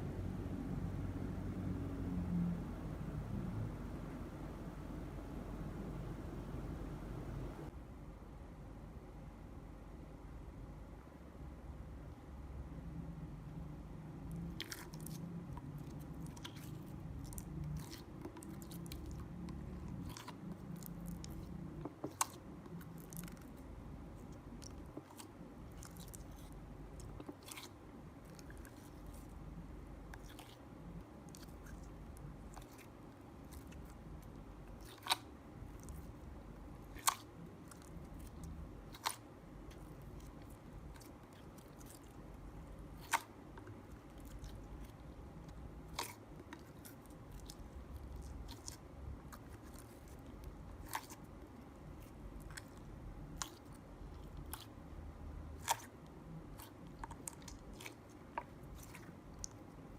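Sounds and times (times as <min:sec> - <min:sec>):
slime kneaded by hand: 0:14.2 - 0:59.9.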